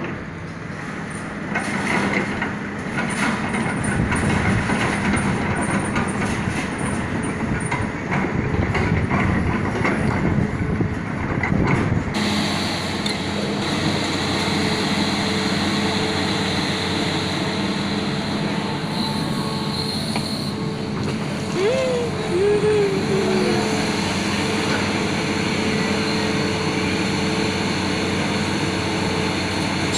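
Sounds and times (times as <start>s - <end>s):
excavator engine running: 0.0s - 29.9s
high whine: 12.2s - 27.6s.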